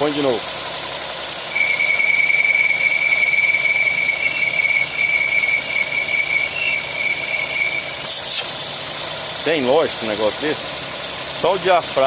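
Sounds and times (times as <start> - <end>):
car engine idling: 0.0 - 12.0
high-pitched whistle: 1.5 - 8.2.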